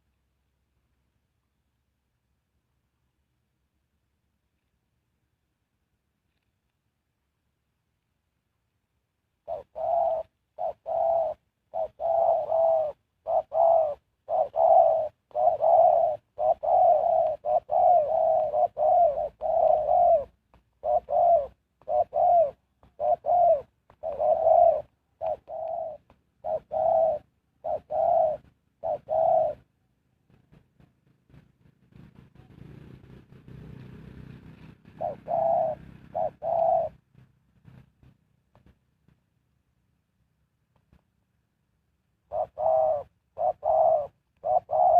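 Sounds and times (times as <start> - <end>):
dove cooing: 9.4 - 29.7, 33.9 - 37.0, 42.2 - 44.9.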